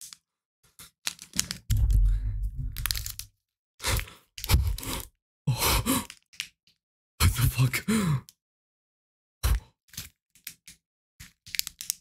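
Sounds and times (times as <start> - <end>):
packaging crackling and tearing: 2.8 - 3.3, 9.9 - 12.0.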